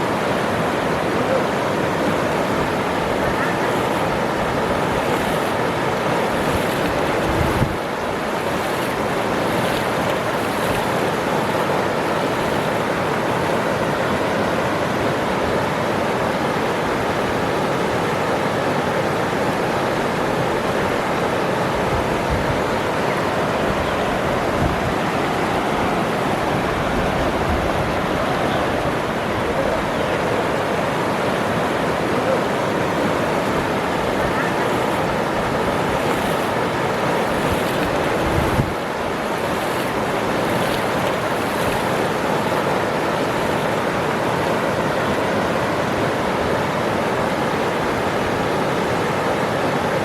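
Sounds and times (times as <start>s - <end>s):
waterfall rushing: 0.0s - 50.0s.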